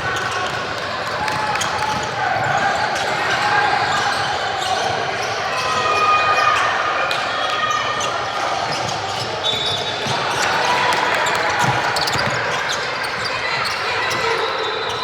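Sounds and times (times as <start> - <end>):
chatter of players and spectators: 0.0 - 15.0
basketball bouncing on court: 11.3 - 14.2.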